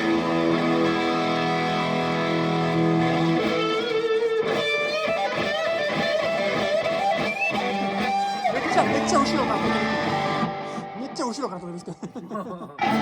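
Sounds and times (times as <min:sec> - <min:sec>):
electric guitar chord ringing: 0:00.0 - 0:11.2
electric guitar lead with bends: 0:00.0 - 0:11.8, 0:12.8 - 0:13.0.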